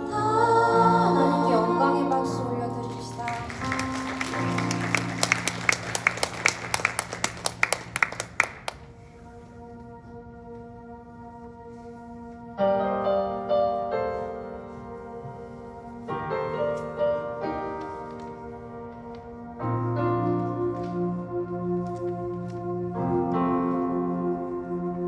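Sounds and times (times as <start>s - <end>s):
piano playing slow chords: 0.0s - 11.7s, 12.3s - 25.0s.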